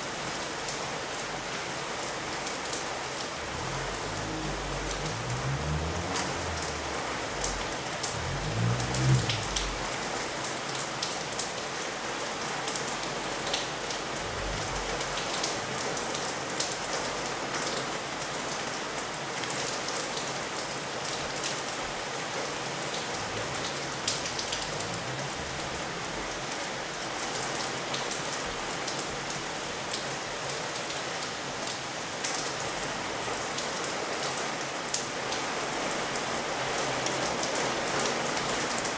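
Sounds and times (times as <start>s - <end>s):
heavy rain pouring: 0.0s - 38.9s
drips and splashes: 3.2s - 10.0s
low rumble: 3.2s - 10.2s, 14.1s - 15.8s, 23.0s - 26.9s.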